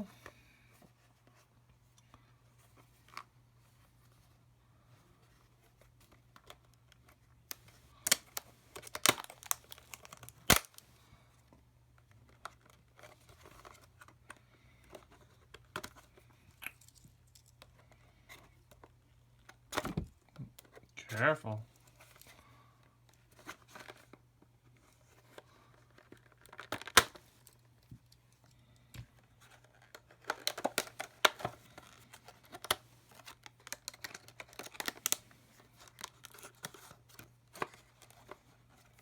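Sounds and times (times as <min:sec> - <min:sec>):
plastic packaging crinkling: 0:07.5 - 0:10.8, 0:29.6 - 0:38.3
plastic packaging snapping: 0:07.5 - 0:10.8, 0:26.4 - 0:27.2, 0:29.9 - 0:31.9, 0:32.5 - 0:35.2.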